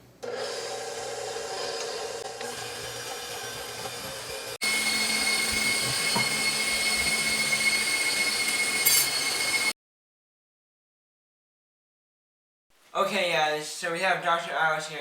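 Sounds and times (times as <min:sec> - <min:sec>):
electric mixer whirring: 0:00.2 - 0:09.7.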